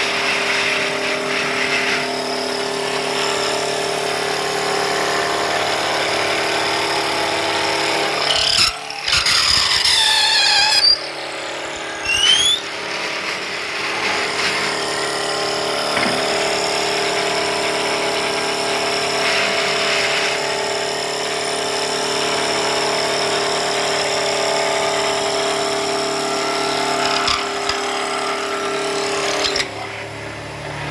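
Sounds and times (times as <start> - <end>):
machine motor humming: 1.7 - 18.3
squeal falling in pitch: 8.2 - 12.8
short rising chirp: 8.4 - 12.8.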